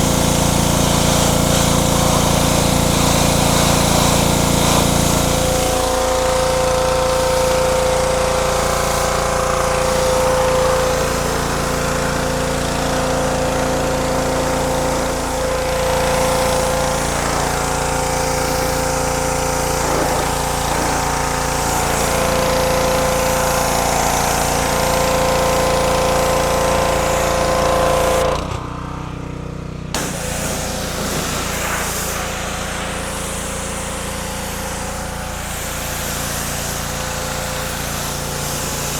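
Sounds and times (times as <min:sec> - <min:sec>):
small gas engine running: 0:00.0 - 0:38.9
hiss: 0:14.6 - 0:22.7, 0:30.0 - 0:38.9.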